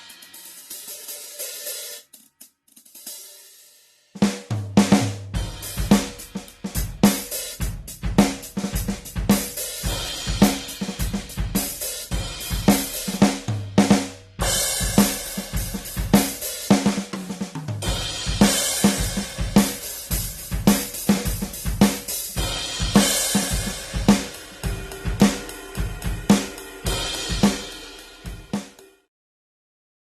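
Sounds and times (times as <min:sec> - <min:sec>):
electronic drum kit groove: 0:00.0 - 0:03.5, 0:04.2 - 0:29.0
cymbal wash: 0:17.8 - 0:29.0.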